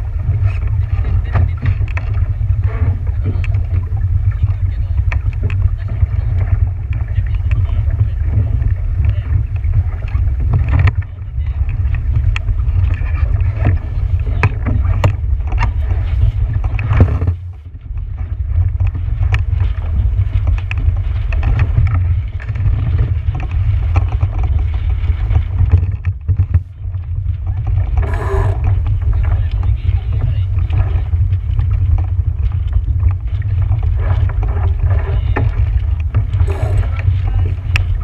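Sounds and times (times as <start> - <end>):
water splashes: 0.0 - 38.0
wind rumbling on microphone: 0.0 - 38.0
knocks on boat: 0.9 - 26.7.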